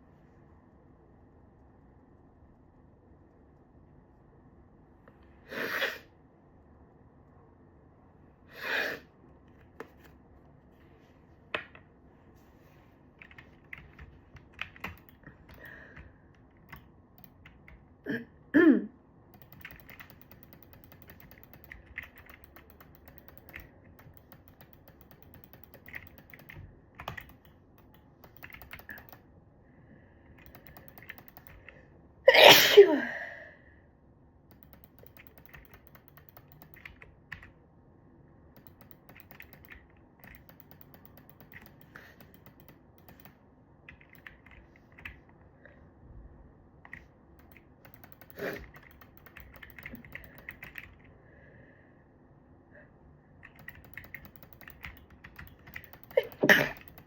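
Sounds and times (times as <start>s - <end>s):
sniffs: 5.4s - 6.1s
stifled sneezes: 32.3s - 33.1s.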